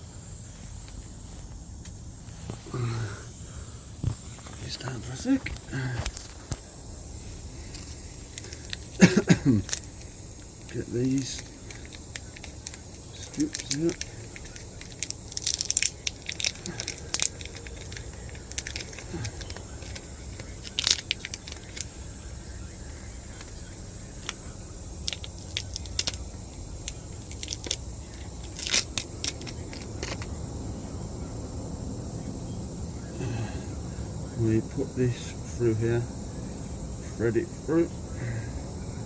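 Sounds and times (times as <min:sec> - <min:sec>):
steady background noise: 0:00.0 - 0:39.0
clicks and rattles of tools: 0:11.3 - 0:20.0, 0:28.4 - 0:30.3.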